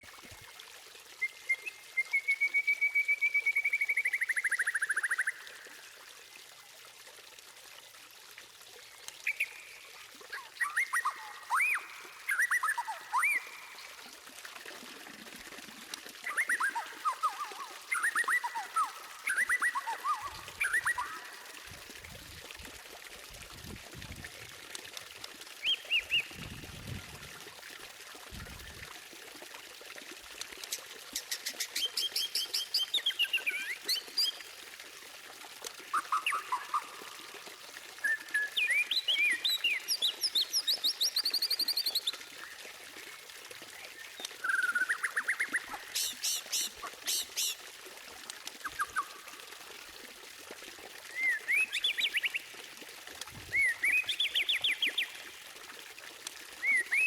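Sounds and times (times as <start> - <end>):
bird singing whistled phrases: 1.2 - 5.4, 10.3 - 14.0, 16.2 - 21.3, 38.0 - 42.0, 44.0 - 46.7, 51.1 - 52.4, 53.5 - 55.1, 56.6 - 57.0.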